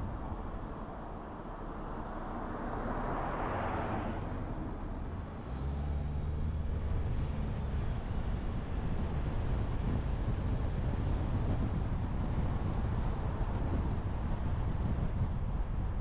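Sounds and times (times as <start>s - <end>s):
passing car tyre whoosh: 1.7s - 4.6s.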